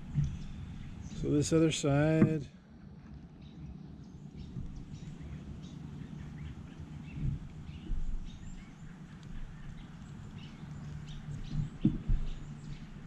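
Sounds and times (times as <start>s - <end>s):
steady low hum: 0.0s - 13.0s
multitool knocks: 2.1s - 2.4s, 11.5s - 12.8s.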